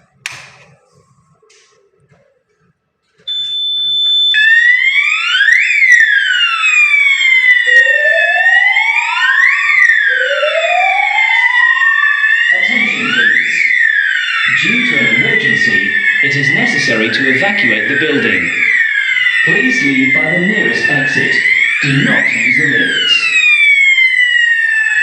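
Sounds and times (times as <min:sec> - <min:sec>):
electronic siren sweeping: 0:00.0 - 0:25.0
steady high beep: 0:03.3 - 0:04.6
recorded voice message: 0:12.5 - 0:13.7, 0:14.5 - 0:18.7, 0:19.4 - 0:23.4.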